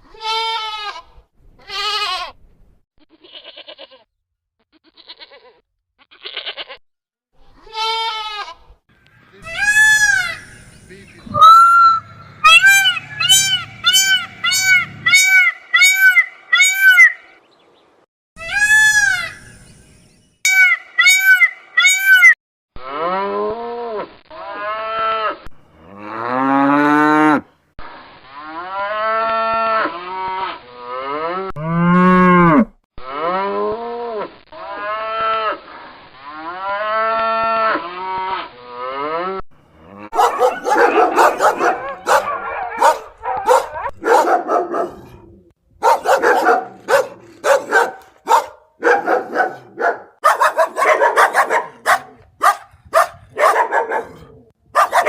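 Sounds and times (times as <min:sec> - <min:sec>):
cow mooing: 0:31.5 - 0:33.3
dog barking: 0:40.1 - 0:55.0.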